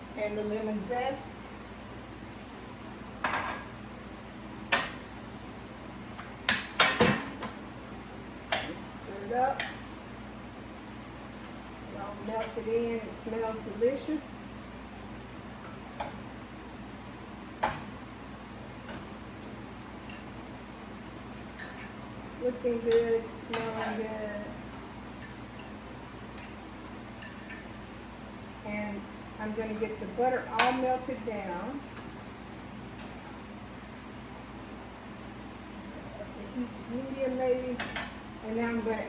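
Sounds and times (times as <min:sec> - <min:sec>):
utensils and dishes clinking: 0:21.5 - 0:22.0, 0:27.2 - 0:27.7.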